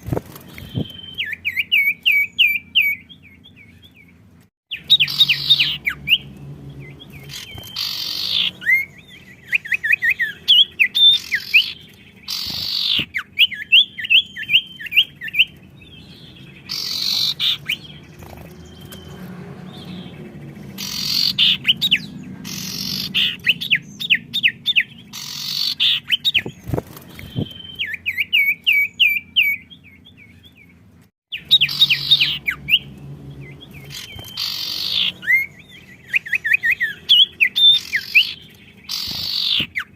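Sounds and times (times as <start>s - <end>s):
caged songbirds singing: 0.0s - 39.9s.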